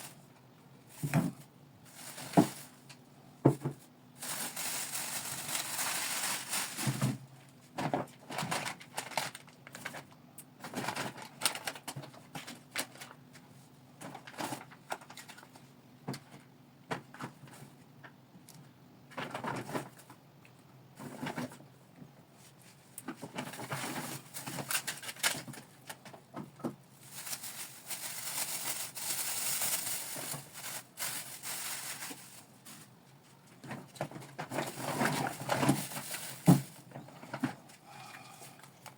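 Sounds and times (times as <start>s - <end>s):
bags and packaging crinkling: 0.9s - 2.9s, 3.6s - 13.2s, 23.2s - 38.9s.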